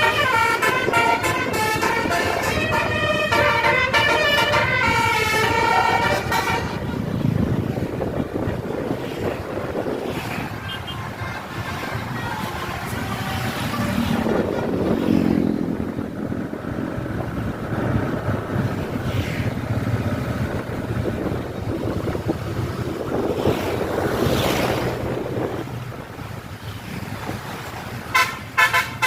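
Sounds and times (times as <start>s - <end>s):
wind rushing over microphone: 0.0s - 28.1s
bus engine running: 0.0s - 29.0s.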